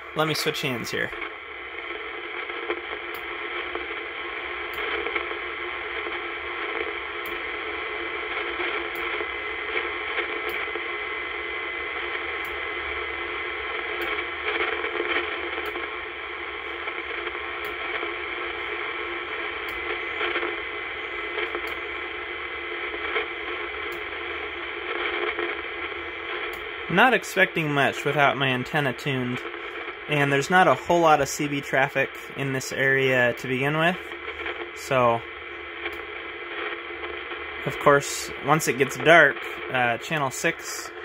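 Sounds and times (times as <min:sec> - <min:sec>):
radio static hiss: 0:00.0 - 0:41.0.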